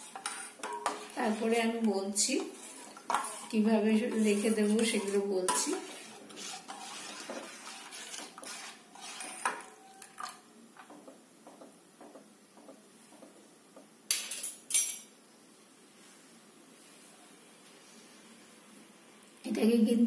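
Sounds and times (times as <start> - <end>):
spoon stirring in metal pot: 0.0 - 12.8.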